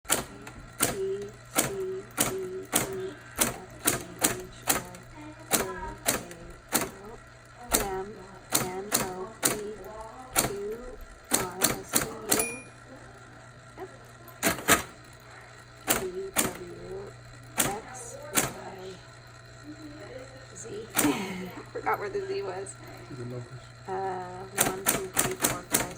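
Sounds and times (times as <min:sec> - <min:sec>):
typewriter keys clacking: 0:00.1 - 0:07.1, 0:07.7 - 0:09.8, 0:10.4 - 0:12.7, 0:14.4 - 0:15.0, 0:15.9 - 0:16.9, 0:17.6 - 0:18.6, 0:24.5 - 0:25.9
typewriter margin bell: 0:11.3 - 0:12.8.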